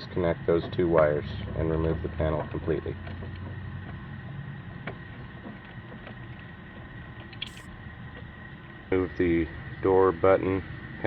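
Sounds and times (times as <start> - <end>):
low background hum: 0.0 - 11.0
faint high whine: 7.4 - 9.7.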